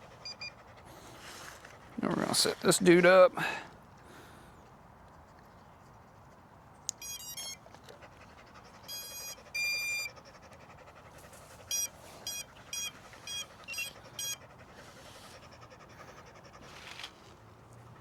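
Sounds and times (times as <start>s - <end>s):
short electronic beeps: 7.0s - 7.6s, 8.9s - 10.1s, 11.7s - 14.4s.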